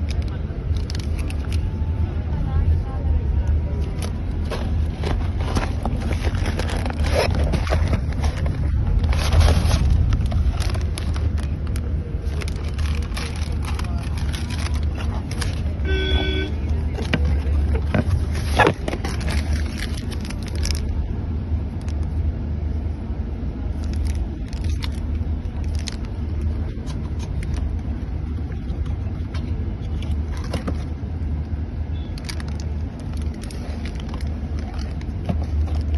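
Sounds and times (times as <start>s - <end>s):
road and tyre rumble: 0.0s - 35.9s.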